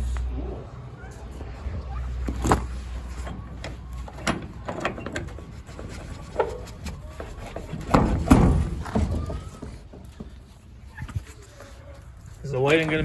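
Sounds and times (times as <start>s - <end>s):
doors knocking and rattling shut: 2.0s - 10.6s.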